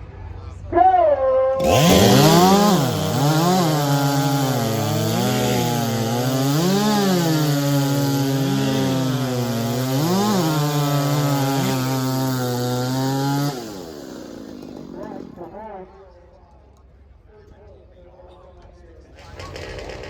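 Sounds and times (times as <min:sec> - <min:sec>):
chainsaws cutting a log: 0:01.6 - 0:15.7, 0:19.2 - 0:20.0.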